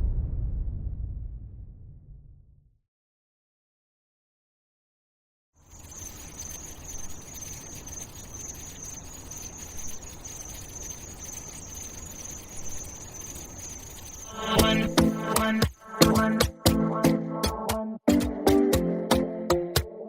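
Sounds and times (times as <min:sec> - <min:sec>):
low rumble: 0:00.0 - 0:02.8
high-pitched chirring hiss: 0:05.6 - 0:16.6
music: 0:14.4 - 0:20.0.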